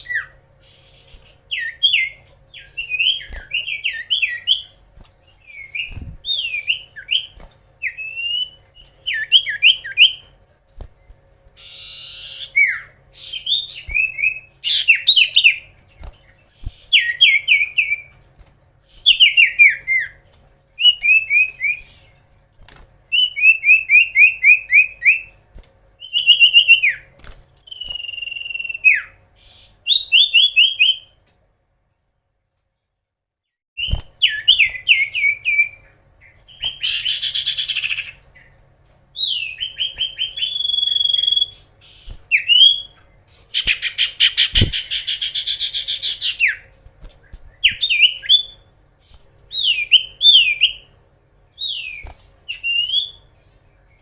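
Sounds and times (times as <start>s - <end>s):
bird singing whistled notes: 5.4s - 10.2s, 16.9s - 18.1s, 27.7s - 29.2s, 39.2s - 43.0s, 51.6s - 53.3s.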